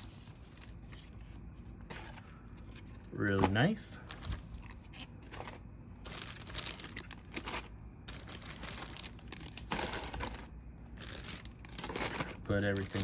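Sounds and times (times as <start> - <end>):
plastic bags crinkling: 2.8 - 13.0.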